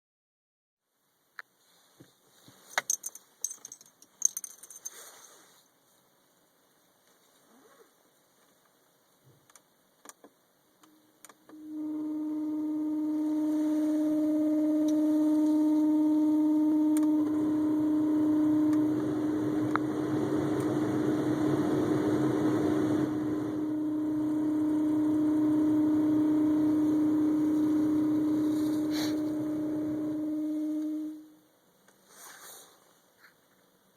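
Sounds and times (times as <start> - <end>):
heater blower motor humming: 11.5 - 31.4.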